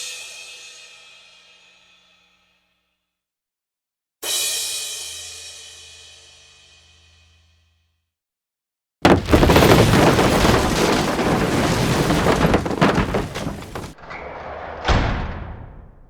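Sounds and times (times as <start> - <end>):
burst of rapid cracks and booms: 9.1 - 14.6.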